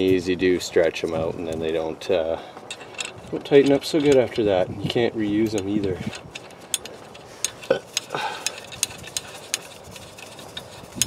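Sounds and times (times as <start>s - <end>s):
metallic clicks of hand tools: 2.6s - 4.5s, 5.4s - 11.0s.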